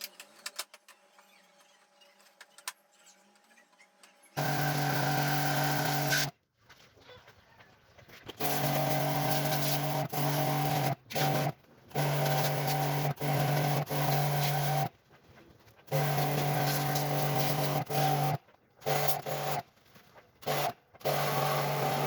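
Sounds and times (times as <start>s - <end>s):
motor-driven machine humming: 4.4s - 6.3s, 20.4s - 22.0s.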